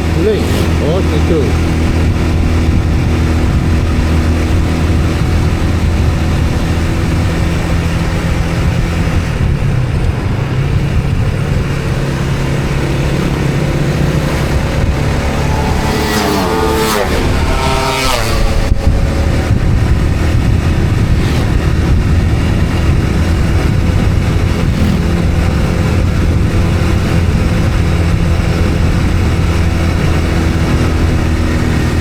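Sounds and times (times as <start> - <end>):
vehicle engine running: 0.0 - 32.0
quick rising engine whine: 12.5 - 28.8.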